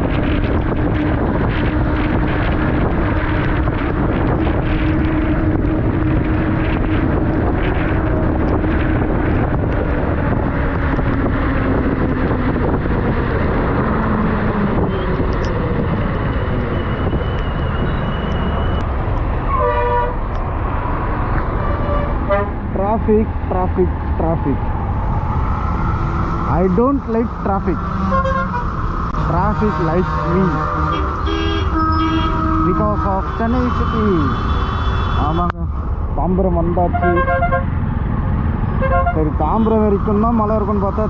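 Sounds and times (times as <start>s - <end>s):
wind and road noise: 0.0s - 41.0s
vehicle horn honk: 28.0s - 28.7s, 30.8s - 35.5s.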